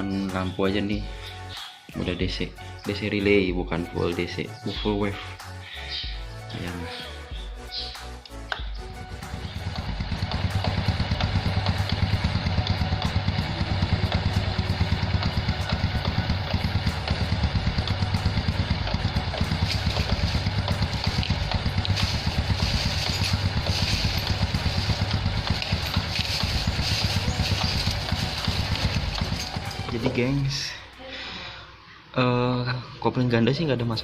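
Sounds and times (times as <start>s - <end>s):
motorcycle engine idling: 8.6s - 30.8s.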